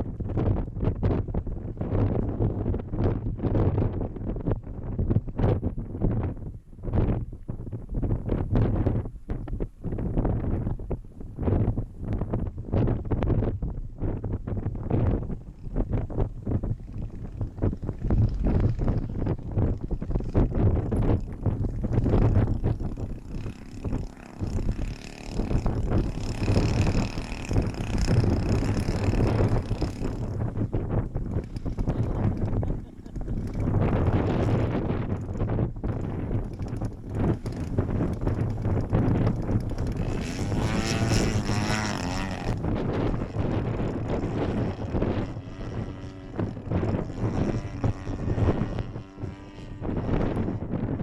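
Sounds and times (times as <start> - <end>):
wind buffeting microphone: 0.0 - 51.0
model plane engine whine: 8.1 - 51.0.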